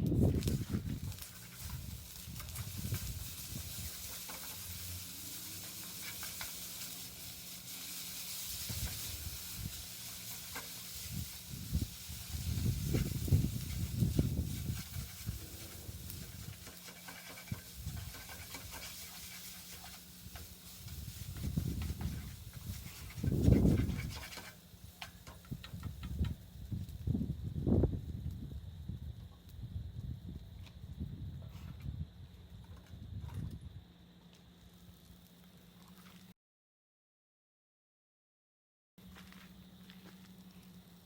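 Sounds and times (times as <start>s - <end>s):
noodles sizzling in a pan: 0.3s - 26.2s
stirring and clatter: 0.6s - 26.3s.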